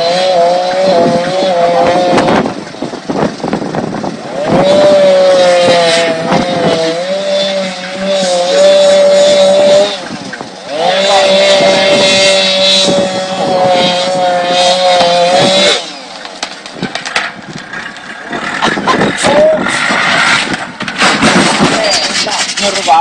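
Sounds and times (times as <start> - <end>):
chainsaw running at high revs: 0.0 - 16.6.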